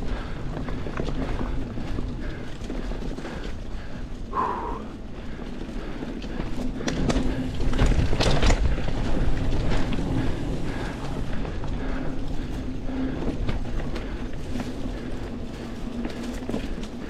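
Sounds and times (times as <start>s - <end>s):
bike rattling over bumps: 0.0s - 17.0s
bike tyres rumbling on dirt: 0.0s - 17.0s.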